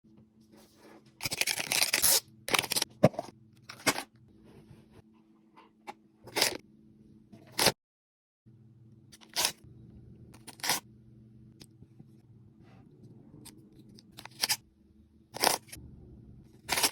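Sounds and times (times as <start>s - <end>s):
faint steady hum: 8.5s - 16.9s.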